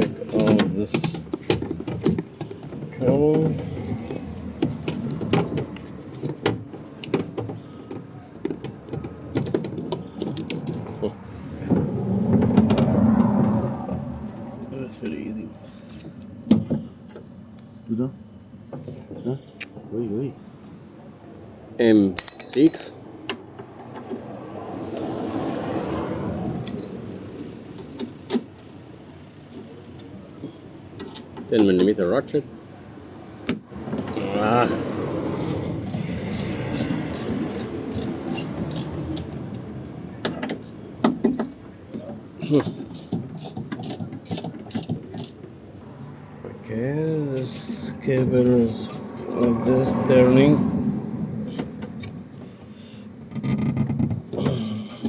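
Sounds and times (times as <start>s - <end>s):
parts rustling and scraping: 0.0s - 14.4s, 15.0s - 17.3s, 46.1s - 49.9s
metallic clinks of tools: 22.2s - 23.0s.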